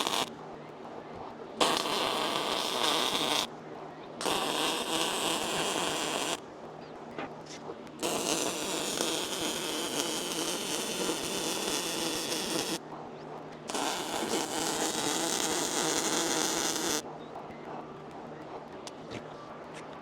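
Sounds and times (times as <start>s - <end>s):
welder crackling buzz: 0.0s - 0.3s, 1.6s - 3.5s, 4.2s - 6.4s, 7.9s - 12.8s, 13.7s - 17.0s.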